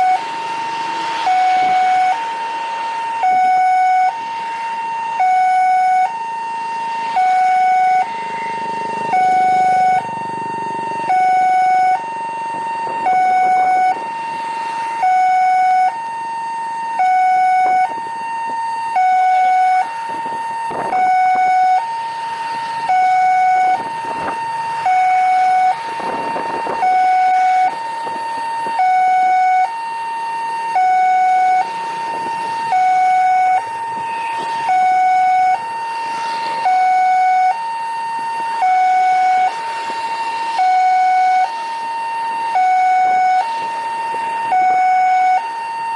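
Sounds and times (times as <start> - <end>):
two-tone siren: 0.0 - 45.9.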